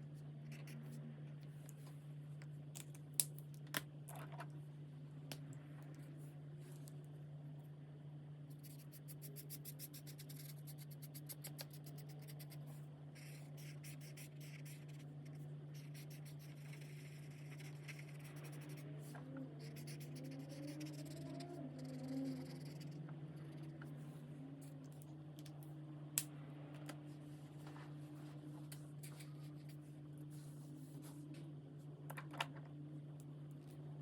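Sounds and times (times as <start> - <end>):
steady low hum: 0.0 - 34.0
marker scratching on paper: 8.6 - 12.6, 13.2 - 18.9, 19.6 - 23.9.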